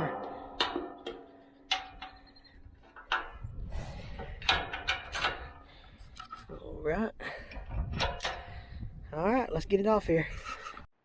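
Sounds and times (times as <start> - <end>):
metal plate clanking: 0.0 - 6.4.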